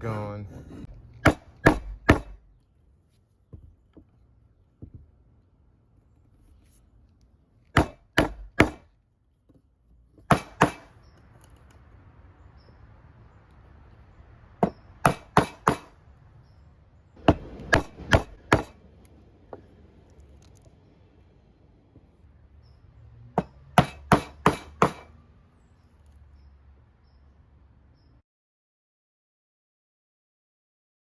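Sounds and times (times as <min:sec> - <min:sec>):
mallet striking a chisel: 0:01.2 - 0:02.4, 0:07.8 - 0:08.9, 0:10.3 - 0:10.9, 0:14.6 - 0:15.9, 0:17.2 - 0:18.8, 0:23.4 - 0:25.1.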